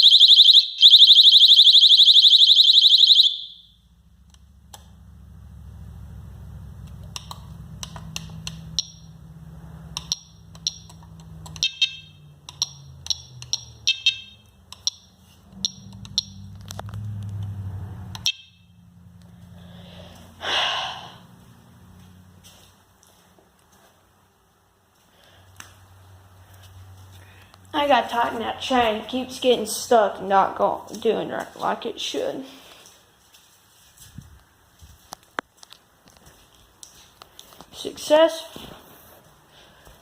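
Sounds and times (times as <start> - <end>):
shrill fire alarm tone: 0.0 - 3.9, 11.6 - 12.2, 13.9 - 14.5
low steady hum: 3.3 - 40.0.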